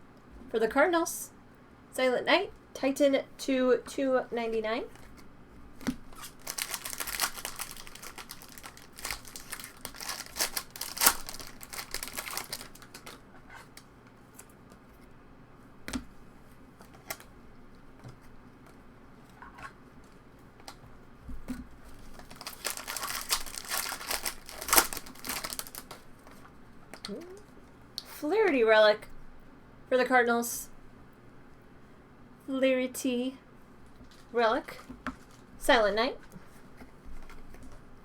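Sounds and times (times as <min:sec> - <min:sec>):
wrappers tearing and crinkling: 0:06.1 - 0:13.2, 0:21.9 - 0:26.0.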